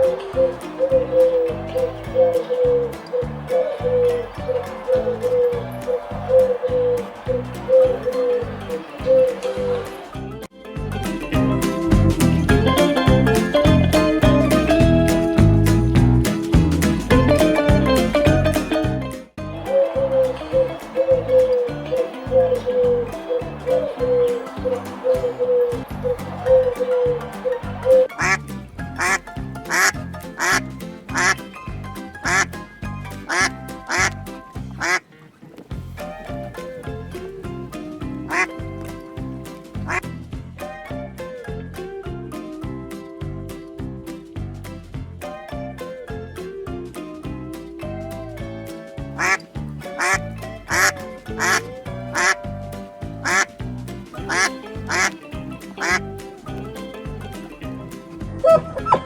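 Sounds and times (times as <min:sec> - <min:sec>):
background music with steady beat: 0:00.0 - 0:35.0, 0:35.7 - 0:59.0
duck quacking: 0:24.7 - 0:31.5, 0:32.2 - 0:32.6, 0:33.2 - 0:34.2, 0:34.8 - 0:35.2, 0:38.3 - 0:38.6, 0:39.8 - 0:40.0, 0:49.2 - 0:52.4, 0:53.2 - 0:53.6, 0:54.2 - 0:55.2, 0:55.8 - 0:56.1.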